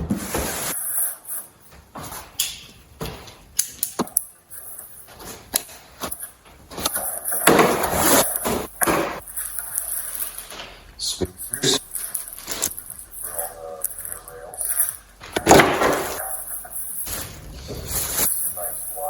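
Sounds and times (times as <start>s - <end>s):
packaging rustling: 4.6s - 19.0s.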